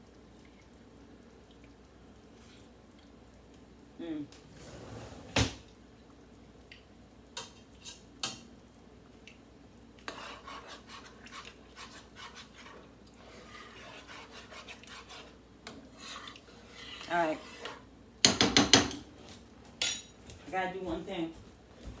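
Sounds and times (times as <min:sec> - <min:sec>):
utensil scraping in pot: 0:10.0 - 0:17.9
cookware clinking: 0:19.8 - 0:20.2.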